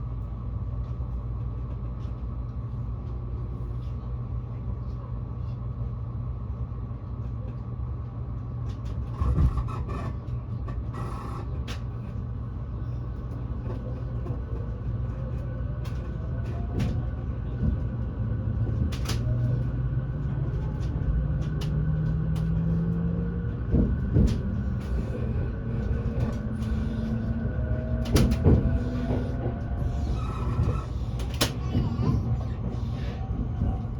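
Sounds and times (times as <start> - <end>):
train rumble: 0.0 - 33.9
train motor whine: 9.0 - 12.2, 20.2 - 33.9.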